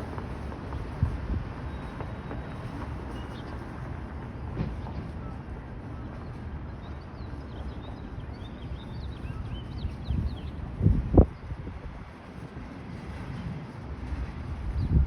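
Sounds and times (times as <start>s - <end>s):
small birds chirping: 6.0s - 10.6s.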